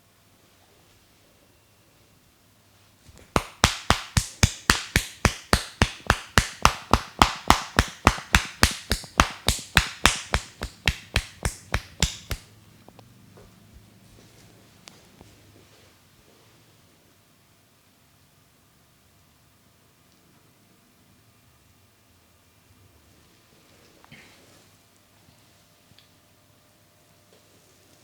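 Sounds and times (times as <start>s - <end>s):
hands tapping on head: 3.1s - 12.5s.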